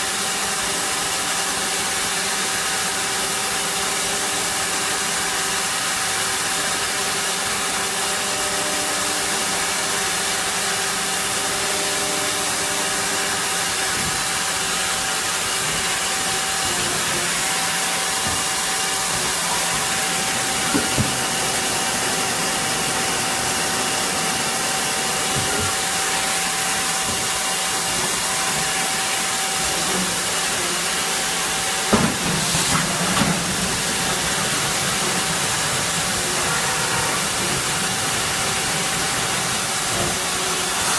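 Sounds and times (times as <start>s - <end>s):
machine hiss and whine: 0.1s - 40.9s
knocks: 20.6s - 21.4s, 25.2s - 26.0s.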